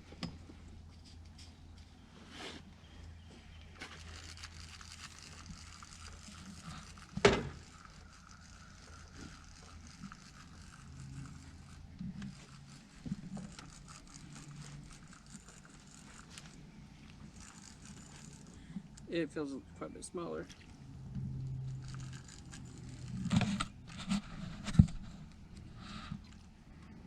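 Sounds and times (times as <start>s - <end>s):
fishing reel clicking: 3.9s - 19.2s, 21.4s - 24.8s.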